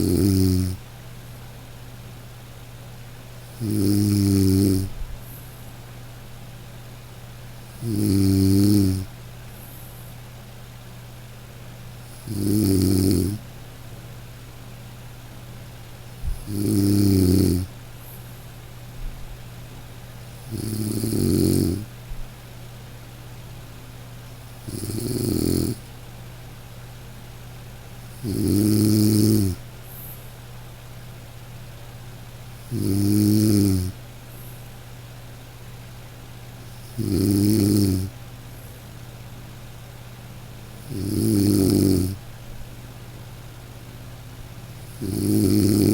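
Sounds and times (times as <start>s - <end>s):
person snoring: 0.0s - 0.8s, 3.5s - 4.9s, 7.7s - 9.1s, 12.1s - 13.4s, 16.3s - 17.7s, 20.4s - 21.8s, 24.6s - 25.9s, 28.1s - 29.6s, 32.6s - 34.0s, 36.8s - 38.1s, 40.8s - 42.2s, 44.8s - 45.9s
steady low hum: 0.0s - 45.9s.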